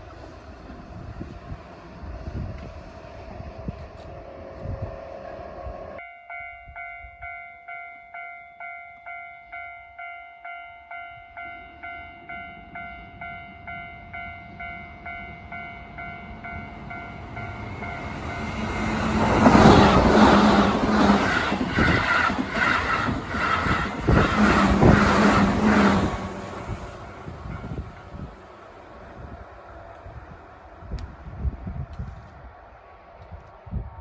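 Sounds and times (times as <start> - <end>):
electric train passing: 0.0 - 34.0
level crossing bell ringing: 6.0 - 18.5.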